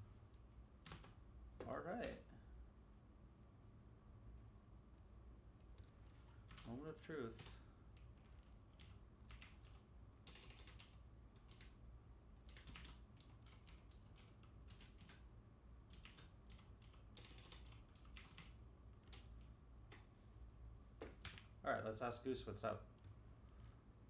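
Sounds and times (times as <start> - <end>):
faint low hum: 0.0 - 24.0
typing on computer keyboard: 0.8 - 1.2, 5.8 - 6.8, 7.4 - 11.8, 12.4 - 15.3, 15.9 - 20.0, 21.0 - 21.6.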